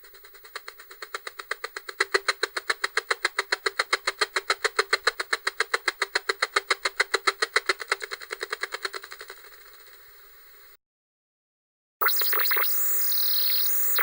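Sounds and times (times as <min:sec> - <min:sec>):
pulsing tv static buzz: 0:12.0 - 0:14.0.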